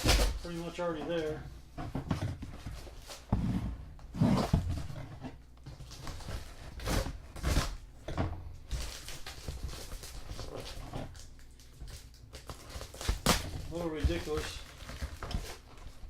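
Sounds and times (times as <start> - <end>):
cardboard rustling and scraping: 0.0 - 16.0
thumps and knocks on cardboard box: 12.9 - 15.6.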